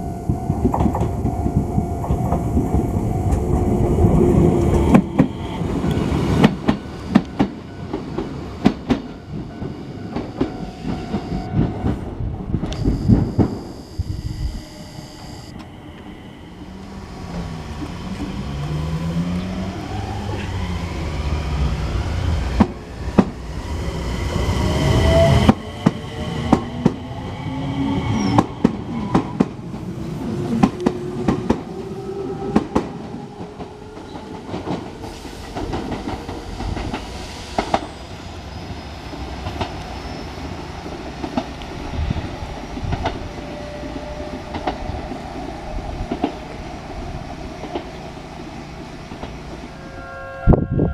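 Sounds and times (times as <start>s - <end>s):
heavy train rumble: 0.0s - 50.9s
train motor whine: 0.2s - 20.0s.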